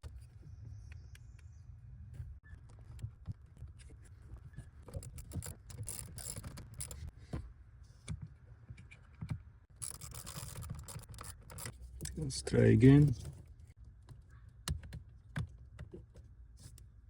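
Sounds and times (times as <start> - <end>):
light clicks and rattles: 2.6 - 7.2, 8.0 - 16.9.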